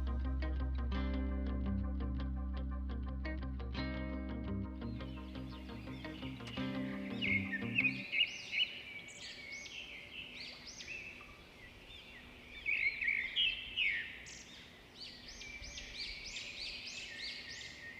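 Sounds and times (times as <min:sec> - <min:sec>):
small birds chirping: 0:04.3 - 0:17.9.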